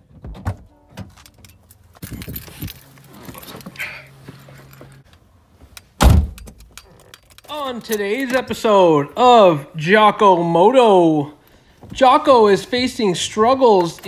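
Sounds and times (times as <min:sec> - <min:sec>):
handling clicks and rattles: 0:01.1 - 0:05.0, 0:05.7 - 0:08.6
keys jangling: 0:01.1 - 0:05.0, 0:06.3 - 0:08.6.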